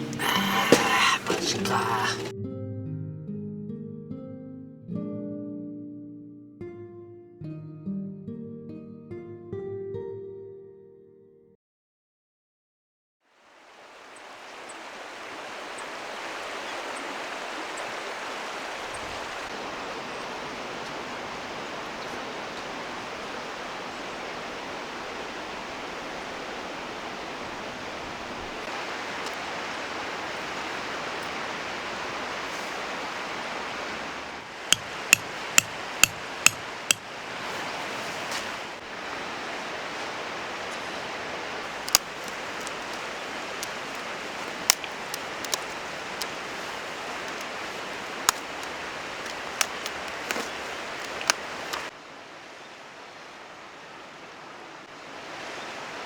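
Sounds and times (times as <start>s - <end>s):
firewood crackling: 41.6s - 51.9s.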